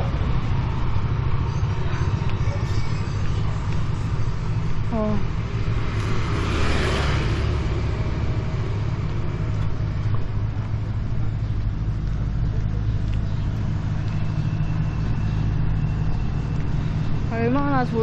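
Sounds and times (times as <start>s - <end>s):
traffic rumble: 0.0s - 18.0s
vehicle passing close by: 0.0s - 18.0s.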